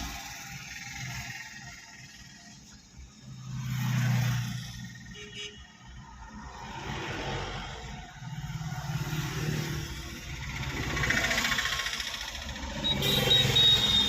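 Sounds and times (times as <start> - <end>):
vehicle engine running: 9.2 - 14.0.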